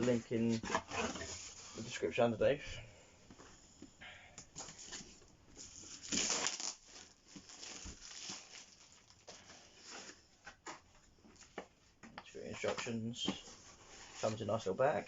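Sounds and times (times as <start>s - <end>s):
packaging rustling and crinkling: 4.6s - 10.8s.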